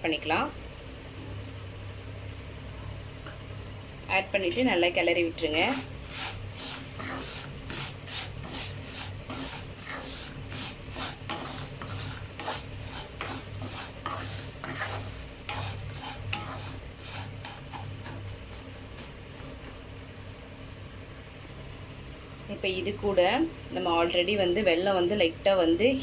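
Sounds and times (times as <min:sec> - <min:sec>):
steady low hum: 0:00.0 - 0:26.0
spatula scraping in a pan: 0:05.5 - 0:19.7.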